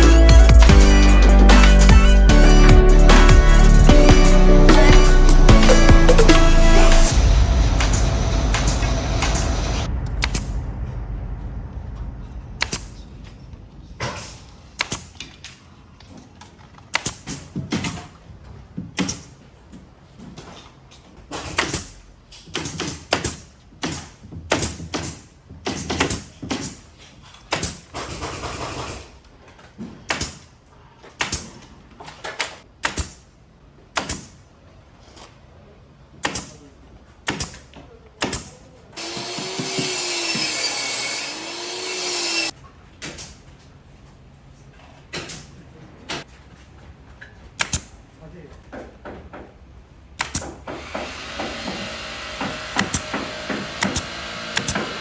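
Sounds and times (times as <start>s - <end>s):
knocks of tools and timber: 39.0s - 41.2s, 48.6s - 49.6s, 50.2s - 55.0s
power tool running: 39.0s - 42.5s.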